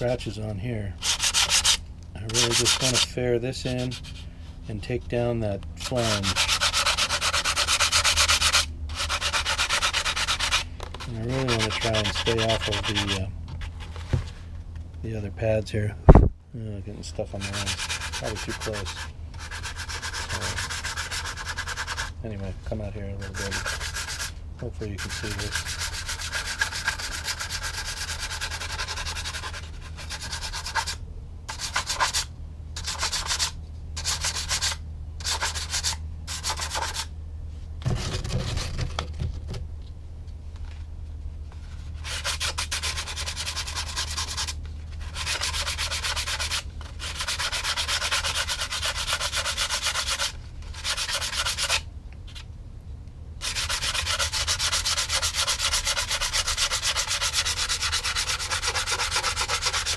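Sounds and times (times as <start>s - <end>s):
sandpaper rubbing by hand: 1.0s - 4.3s, 5.8s - 14.1s, 17.2s - 22.1s, 23.2s - 37.1s, 41.7s - 52.4s, 53.4s - 59.9s.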